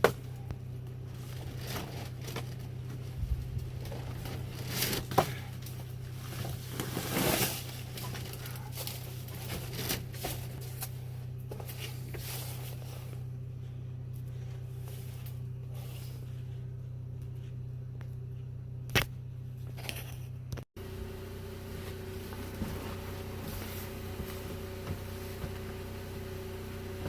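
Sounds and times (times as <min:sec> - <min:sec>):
steady low hum: 0:00.0 - 0:27.0
rustling: 0:00.9 - 0:16.7.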